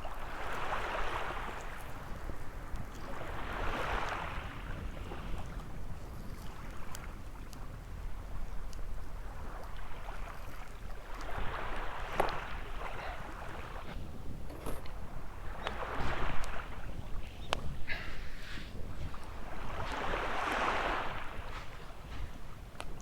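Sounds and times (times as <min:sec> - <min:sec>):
small waves washing onto sand: 0:00.0 - 0:23.0
wind rumble on microphone: 0:00.0 - 0:23.0.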